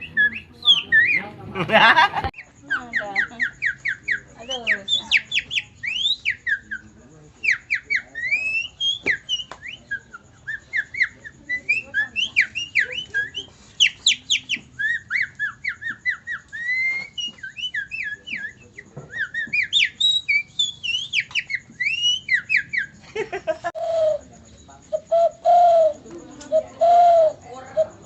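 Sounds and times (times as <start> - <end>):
man whistling birdsong: 23.8 - 24.3, 26.8 - 27.4.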